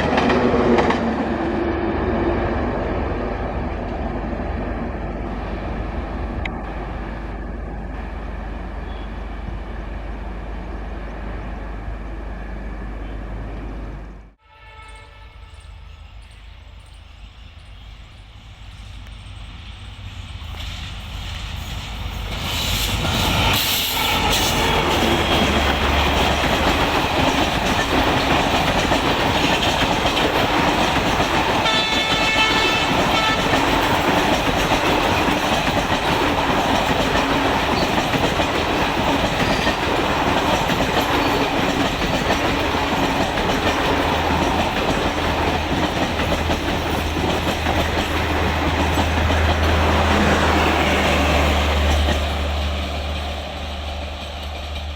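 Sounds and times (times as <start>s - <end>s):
train rumbling on rails: 0.0s - 54.9s
train horn blast: 14.4s - 16.2s, 31.6s - 34.0s.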